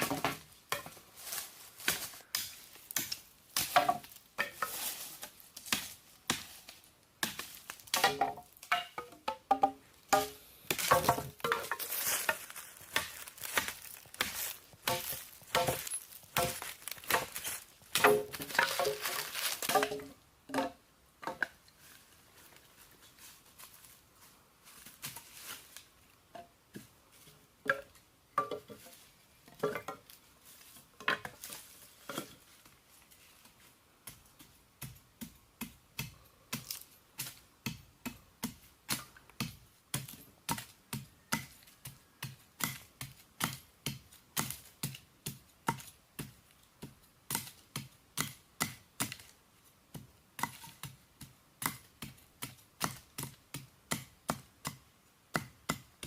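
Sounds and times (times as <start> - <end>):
sharp chopping strikes: 7.2 - 11.8, 12.9 - 20.0.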